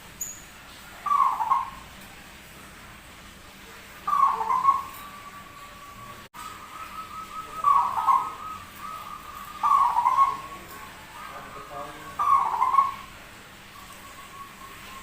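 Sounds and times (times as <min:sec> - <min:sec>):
dove cooing: 0:01.0 - 0:01.9, 0:04.0 - 0:13.2.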